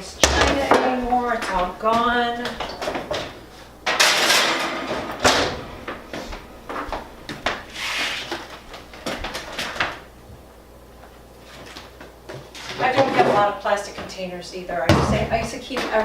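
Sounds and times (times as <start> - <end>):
drawer sliding: 7.6 - 8.5.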